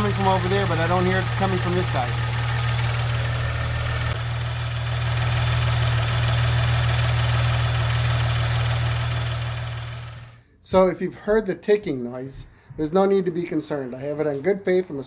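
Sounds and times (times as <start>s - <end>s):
car engine idling: 0.0s - 10.4s
fast ticking fuel pump: 0.0s - 10.4s.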